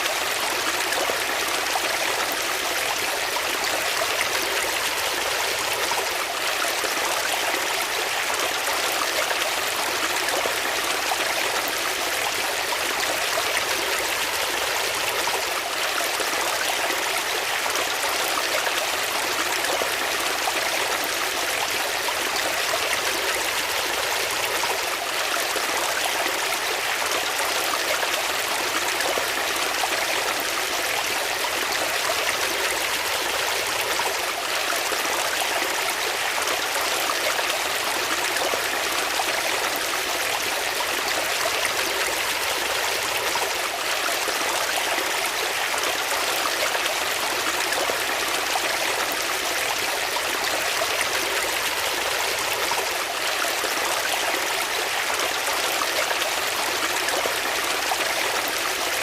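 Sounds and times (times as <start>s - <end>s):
flowing water: 0.0s - 59.0s.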